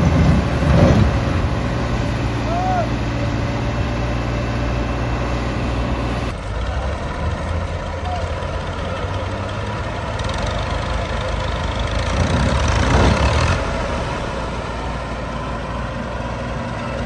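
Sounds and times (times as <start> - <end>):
combine harvester diesel engine running: 0.0 - 17.0.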